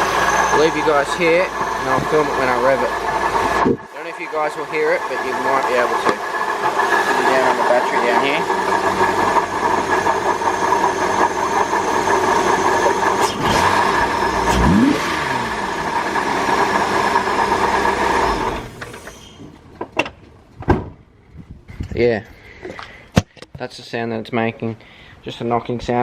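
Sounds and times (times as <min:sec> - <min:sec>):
car engine running: 0:00.0 - 0:19.2
engine revving: 0:00.0 - 0:19.3.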